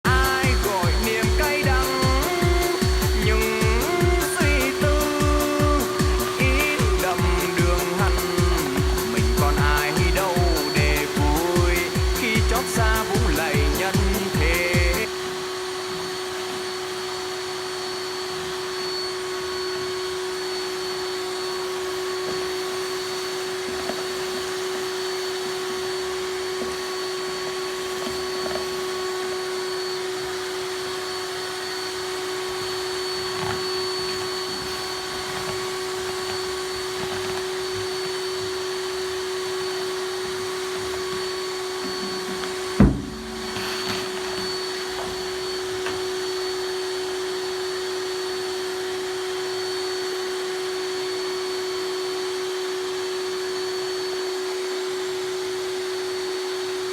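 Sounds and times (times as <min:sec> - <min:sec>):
router spindle whining: 0:00.0 - 0:56.9
sharp knock: 0:41.9 - 0:43.9.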